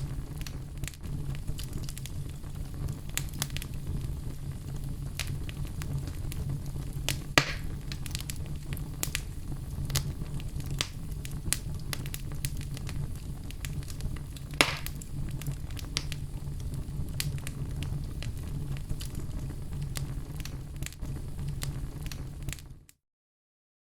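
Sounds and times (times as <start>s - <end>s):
fire low rumble: 0.0s - 22.9s
fire crackling and popping: 0.0s - 23.0s.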